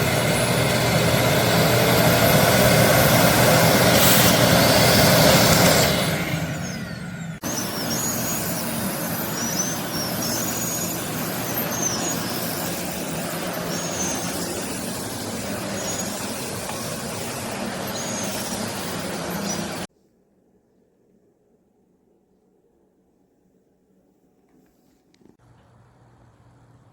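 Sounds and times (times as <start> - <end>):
vacuum cleaner running: 0.0 - 19.9.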